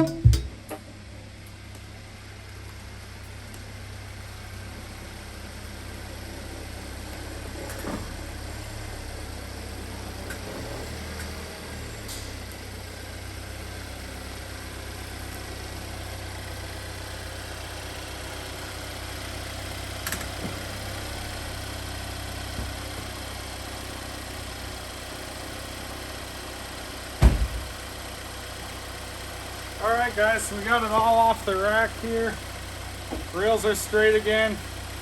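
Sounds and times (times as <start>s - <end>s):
loud knock: 0.0s - 0.7s, 27.2s - 27.7s
engine idling: 0.0s - 35.0s.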